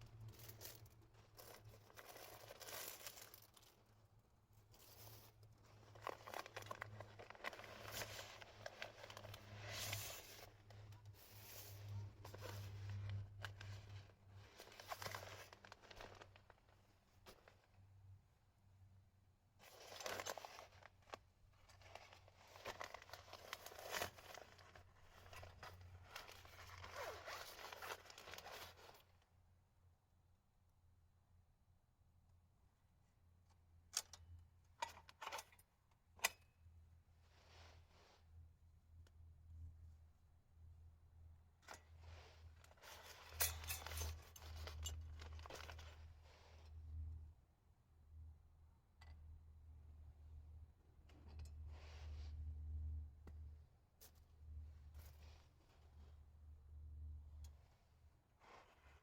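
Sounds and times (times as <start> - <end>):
fabric or packaging rustling: 0.2 - 3.9, 4.6 - 17.8, 19.6 - 29.2, 41.7 - 46.7, 58.4 - 59.0
zipper: 5.9 - 10.5, 21.7 - 29.0, 42.2 - 46.0.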